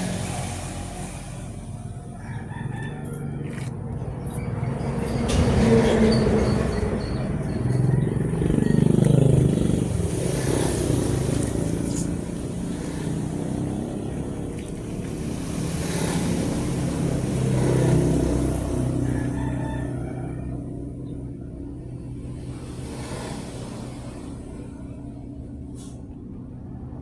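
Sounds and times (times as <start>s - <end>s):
vehicle engines passing by: 0.0s - 27.0s.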